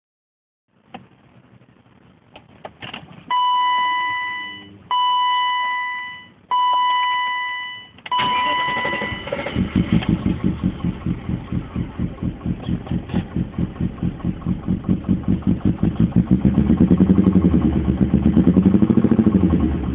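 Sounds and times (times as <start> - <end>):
dashboard warning chime: 3.3 - 9.6
car engine idling rough: 8.4 - 19.9.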